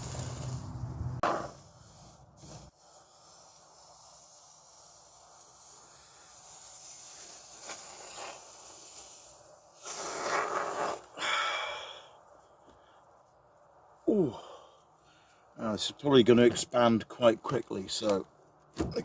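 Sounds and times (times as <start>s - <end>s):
expanding foam can hissing: 0.0s - 12.0s.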